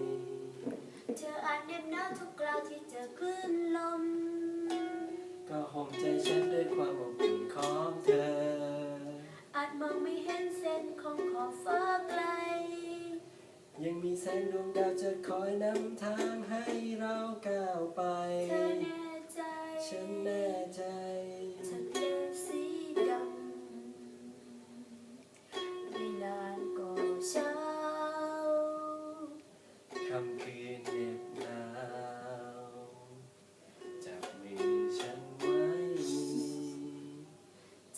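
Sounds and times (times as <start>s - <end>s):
ukulele chords: 0.0s - 33.2s, 33.8s - 37.3s
person singing: 0.0s - 37.4s.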